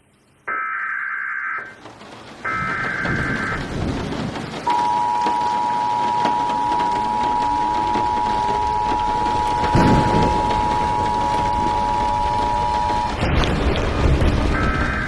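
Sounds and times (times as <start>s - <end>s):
two-tone alert signal: 4.7s - 13.2s.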